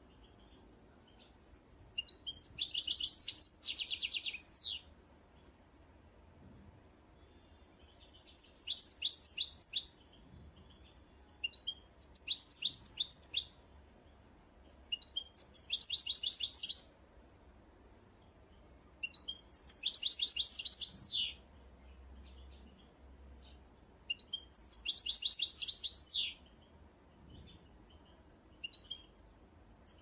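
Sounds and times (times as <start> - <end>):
songbird singing high notes: 2.0 - 4.8, 15.0 - 16.9, 19.0 - 21.4.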